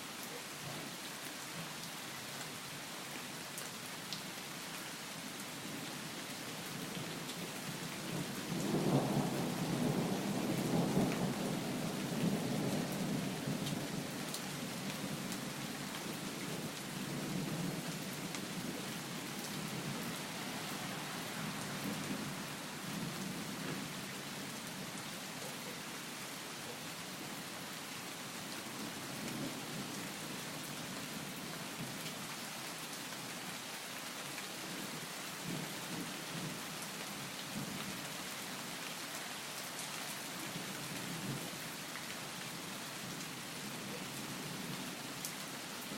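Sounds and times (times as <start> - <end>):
steady rain hissing: 0.0 - 45.9.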